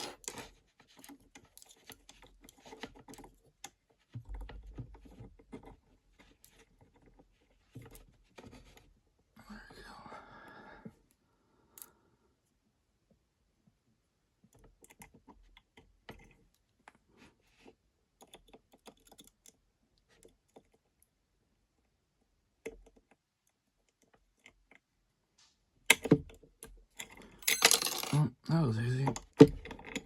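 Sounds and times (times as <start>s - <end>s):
lock picks clicking and scraping: 25.9s - 28.2s.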